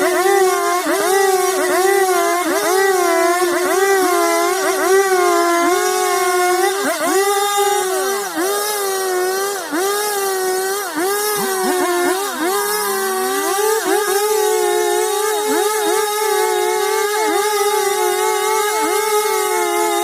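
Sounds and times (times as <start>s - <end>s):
chainsaw cutting wood: 0.0s - 20.0s.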